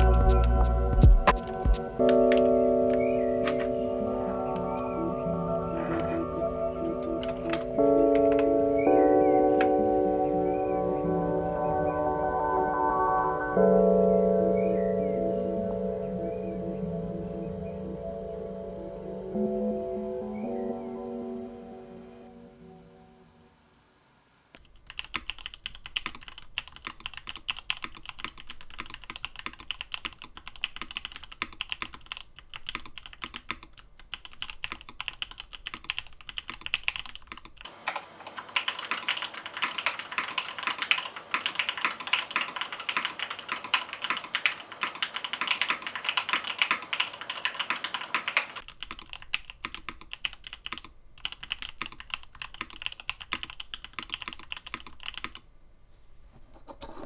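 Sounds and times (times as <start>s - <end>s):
mechanical keyboard typing: 6.8s - 9.8s, 24.6s - 55.4s.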